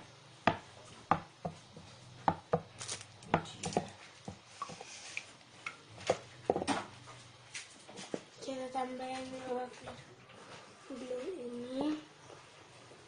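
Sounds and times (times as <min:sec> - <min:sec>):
slime being stirred: 0:01.6 - 0:05.8.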